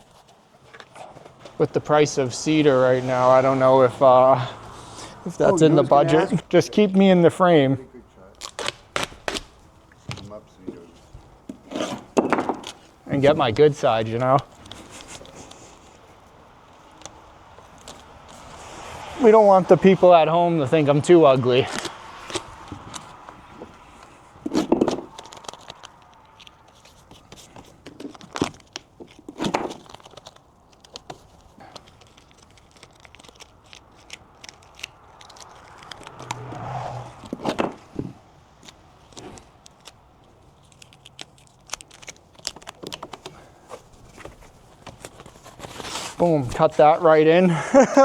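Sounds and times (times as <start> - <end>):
knocks and scrapes: 0.0 - 6.8, 8.4 - 20.2, 20.8 - 47.0
material crinkling: 0.0 - 48.0.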